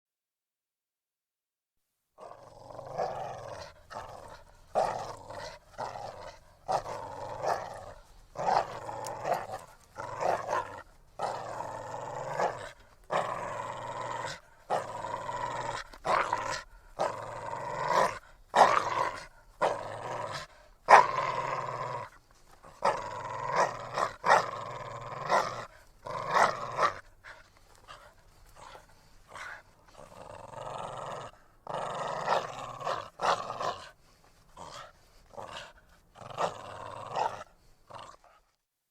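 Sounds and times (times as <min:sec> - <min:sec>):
dog growling: 0:02.2 - 0:38.6.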